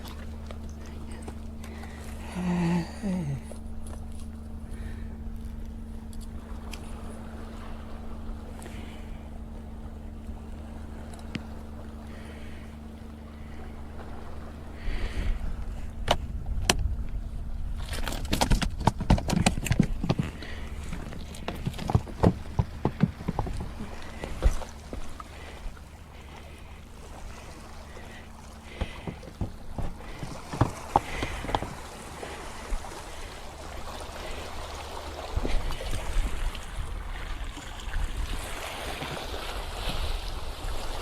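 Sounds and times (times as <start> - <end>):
seawater sloshing among rocks: 0.0 - 41.0
wind noise on microphone: 15.1 - 20.3
rapid irregular clicks and knocks: 18.1 - 24.6.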